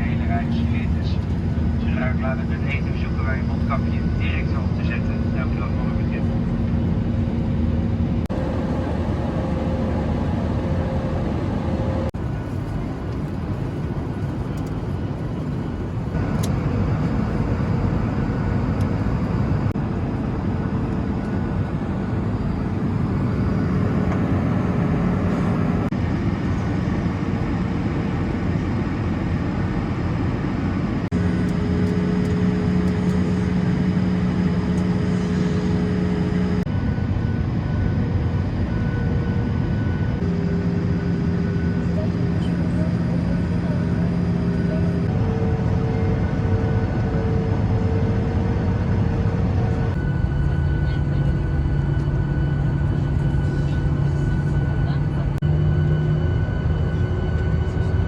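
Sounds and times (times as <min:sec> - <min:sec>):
low hum: 0:00.0 - 0:39.0
jet engine roar in cabin: 0:00.0 - 0:58.0.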